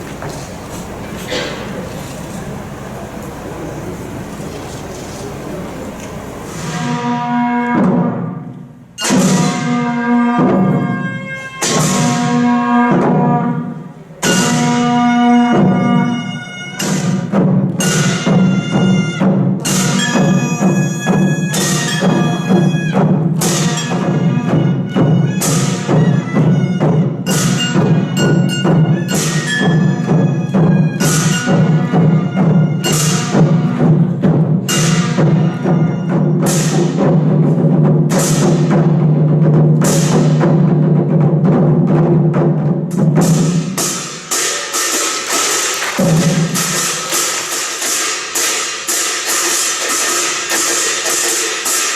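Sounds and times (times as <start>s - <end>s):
dense steady drumming: 29.8s - 51.9s.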